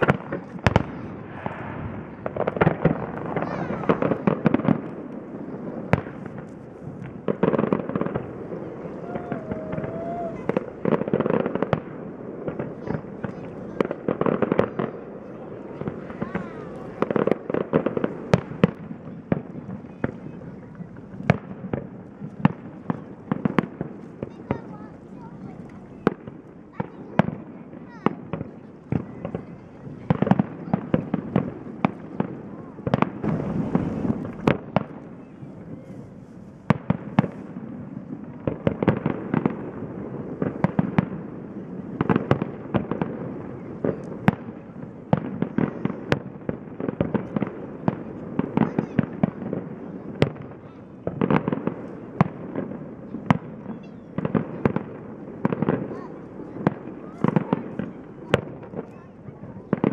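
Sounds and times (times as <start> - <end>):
firework bangs: 0.0 - 59.9
firework crackles: 0.0 - 59.9.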